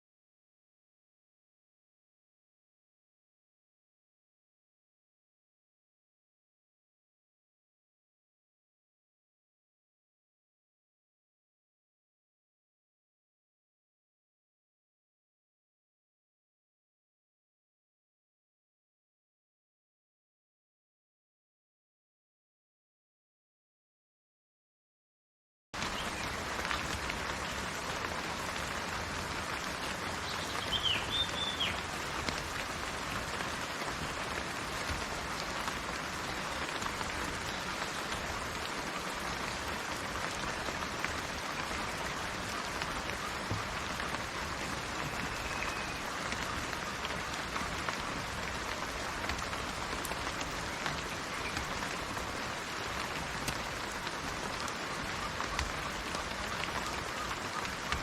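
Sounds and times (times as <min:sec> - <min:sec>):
rain falling on leaves: 0:25.8 - 0:58.0
bird call: 0:30.2 - 0:31.9, 0:44.8 - 0:46.6.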